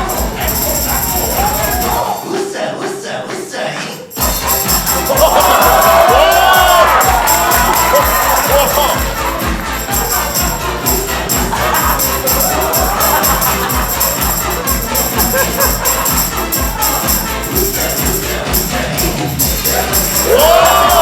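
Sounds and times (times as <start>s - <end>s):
tambourine jingling: 0.0s - 2.3s, 4.1s - 21.0s
upbeat music with fast beat: 0.0s - 21.0s
sung melody: 4.2s - 21.0s.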